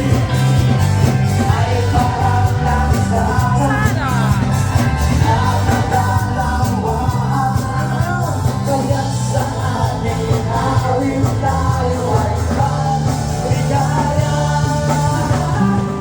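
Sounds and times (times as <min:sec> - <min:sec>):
live rock band playing: 0:00.0 - 0:16.0
person singing: 0:01.4 - 0:16.0.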